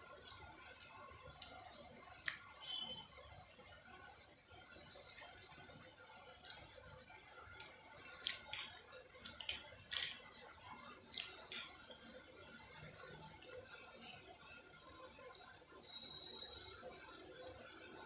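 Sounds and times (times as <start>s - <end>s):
person chewing and slurping noodles: 5.2s - 12.3s.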